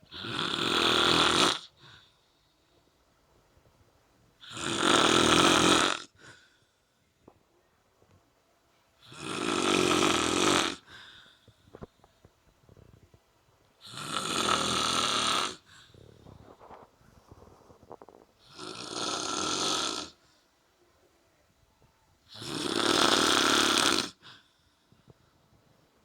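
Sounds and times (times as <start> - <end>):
man snoring heavily: 0.1 - 1.7, 4.4 - 6.2, 9.1 - 10.9, 13.8 - 15.7, 18.5 - 20.2, 22.3 - 24.2
quiet breathing: 1.7 - 4.4, 6.0 - 9.2, 10.8 - 18.7, 19.4 - 22.4, 24.1 - 26.0.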